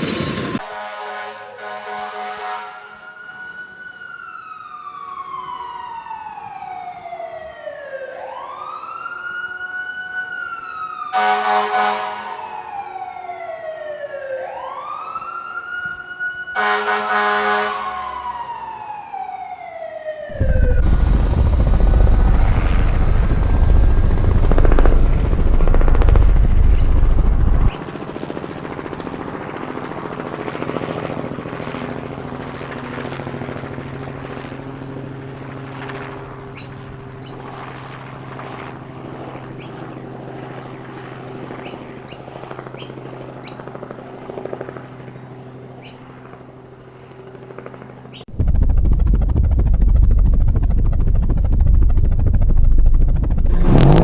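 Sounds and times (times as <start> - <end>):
siren wailing: 0.0 - 45.0, 53.0 - 54.0
horn blasts: 0.6 - 3.4, 11.1 - 12.7, 16.5 - 18.4
loud rumbling rush: 20.3 - 27.7, 48.3 - 54.0.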